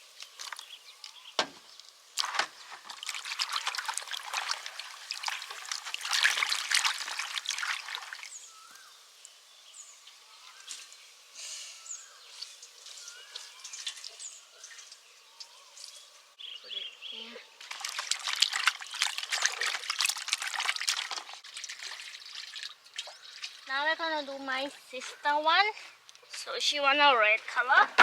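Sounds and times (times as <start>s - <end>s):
birds chirping: 0.0s - 2.2s, 6.6s - 20.0s, 20.6s - 28.0s
liquid pouring into container: 2.2s - 8.9s, 17.6s - 23.7s.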